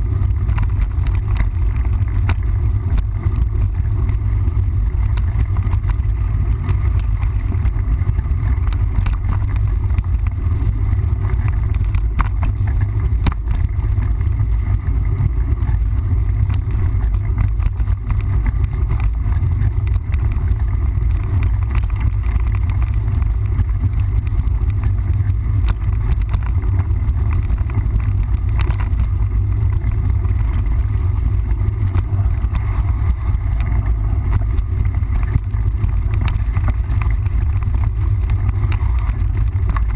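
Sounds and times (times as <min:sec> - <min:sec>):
bike clicks and rattles: 0:00.0 - 0:39.9
wind buffeting microphone: 0:00.0 - 0:39.9.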